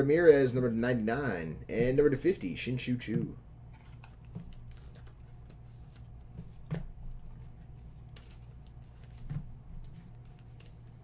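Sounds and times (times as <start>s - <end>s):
steady low hum: 0.0s - 11.0s
trading cards rustling: 3.7s - 11.0s.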